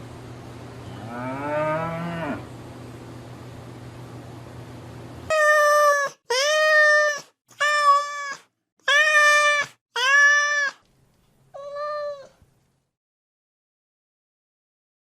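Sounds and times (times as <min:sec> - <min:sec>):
cat meowing: 0:05.3 - 0:10.8, 0:11.6 - 0:12.4.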